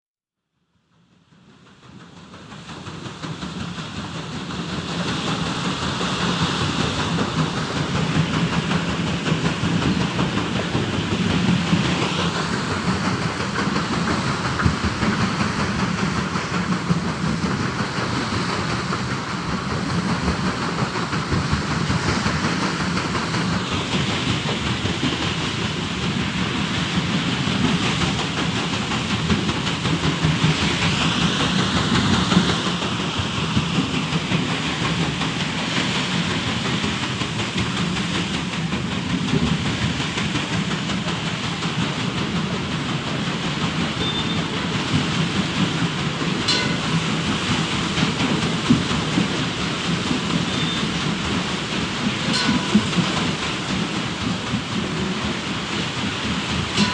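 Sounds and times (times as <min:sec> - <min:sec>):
flowing water rushing: 0:33.1 - 0:56.9.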